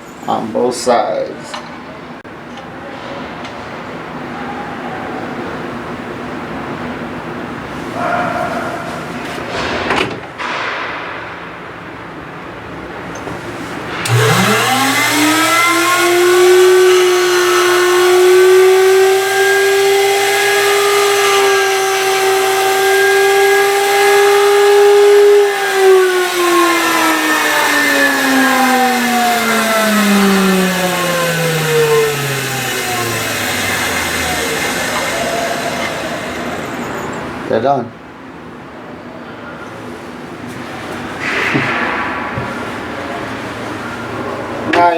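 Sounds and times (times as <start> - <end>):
grinding wheel motor whine: 13.8 - 37.5.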